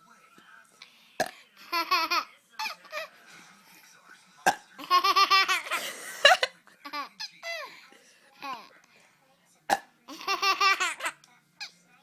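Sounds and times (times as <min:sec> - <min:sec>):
baby laughing: 0:04.8 - 0:05.9, 0:10.1 - 0:11.2.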